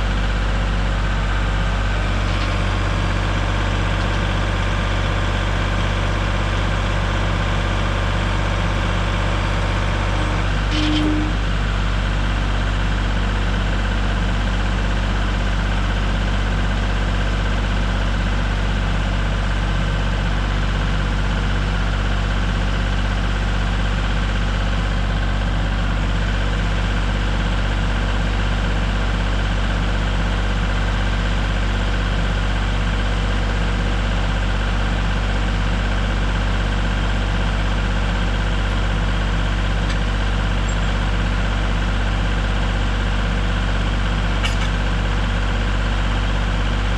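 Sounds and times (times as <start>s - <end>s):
sawmill engine running: 0.0s - 46.9s.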